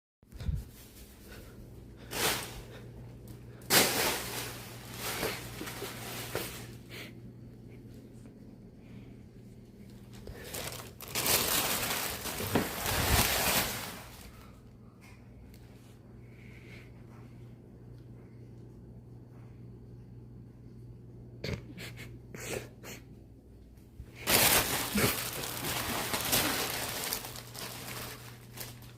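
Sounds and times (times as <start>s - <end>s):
steady low hum: 0.3s - 28.9s
bag rustling: 10.2s - 14.4s, 24.2s - 28.9s.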